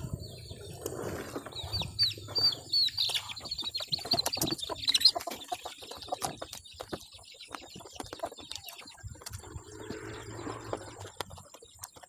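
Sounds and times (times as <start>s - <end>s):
bird chirping: 0.0s - 12.0s.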